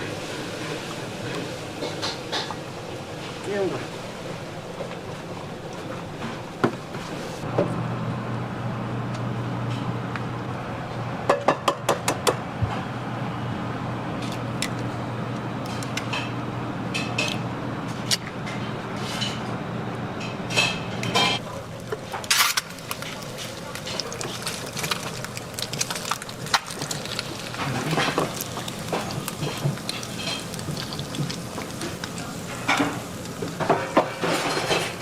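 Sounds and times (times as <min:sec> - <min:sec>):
utensils clinking on dishes: 0:20.2 - 0:35.0.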